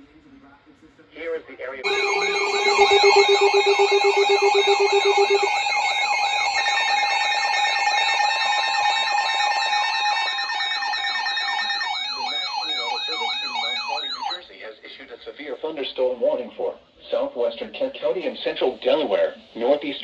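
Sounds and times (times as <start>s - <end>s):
fast-pulsing low beep: 1.8s - 14.4s
steady high alarm tone: 1.8s - 14.4s
warbling alarm siren tones: 1.8s - 14.4s.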